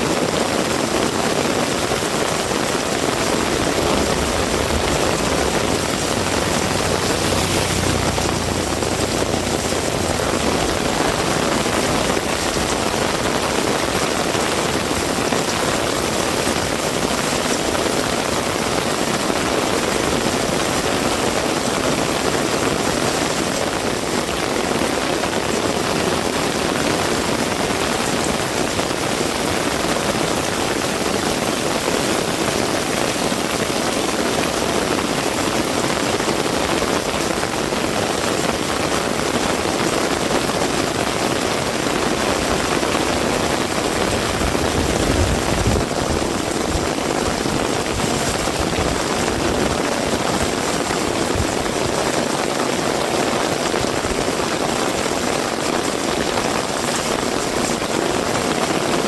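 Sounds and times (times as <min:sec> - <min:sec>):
heavy rain falling: 0:00.0 - 0:59.0
low rumble: 0:02.4 - 0:12.7.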